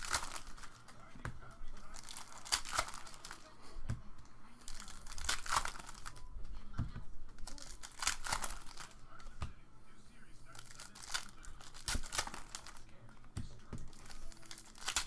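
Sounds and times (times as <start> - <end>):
card pack wrappers tearing and crinkling: 0.0 - 3.5, 4.6 - 6.3, 7.4 - 9.3, 10.5 - 12.9, 13.8 - 15.0.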